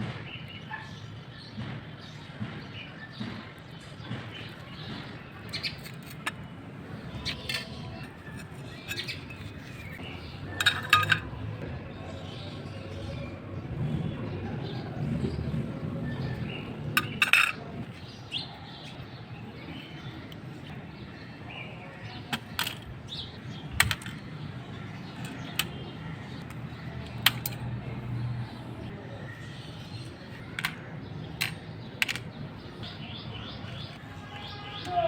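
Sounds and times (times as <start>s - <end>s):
metal clock parts clinking: 7.3s - 11.4s.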